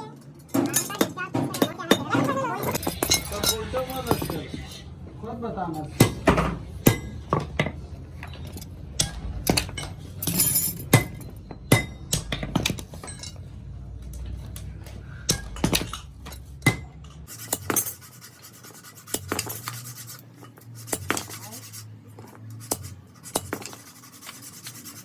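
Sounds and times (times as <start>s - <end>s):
metal tools clinking: 0.0s - 4.9s, 8.2s - 14.7s
low hum: 2.4s - 17.3s.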